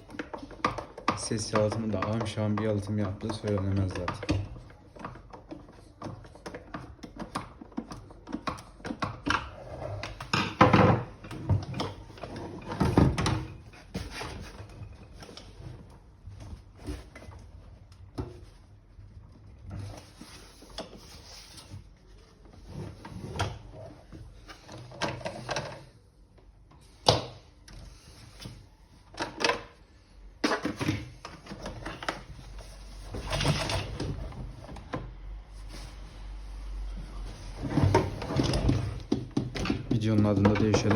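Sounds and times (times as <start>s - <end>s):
plastic parts clicking and knocking: 0.0s - 17.4s, 23.3s - 26.0s, 26.7s - 29.8s, 30.4s - 35.1s, 37.7s - 40.9s.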